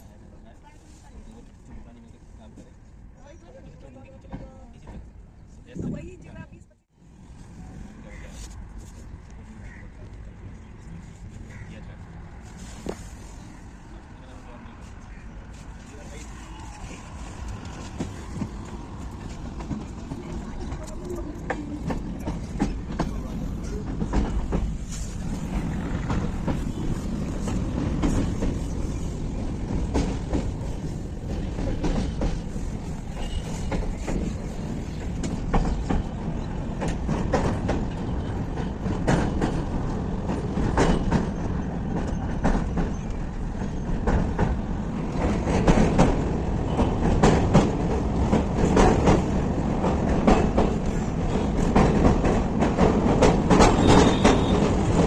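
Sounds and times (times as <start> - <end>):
train low rumble: 0.0 - 55.0
train wheels clacking on rail joints: 17.3 - 55.0.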